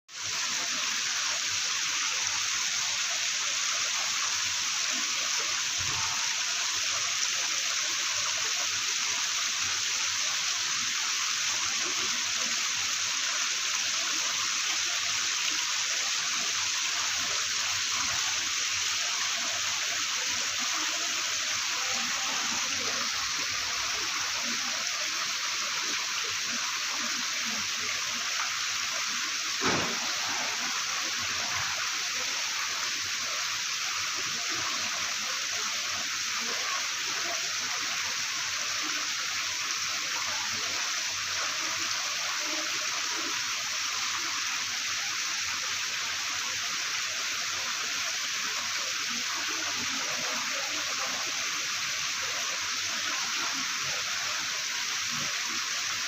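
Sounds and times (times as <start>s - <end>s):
waterfall splashing into pond: 0.1s - 56.0s.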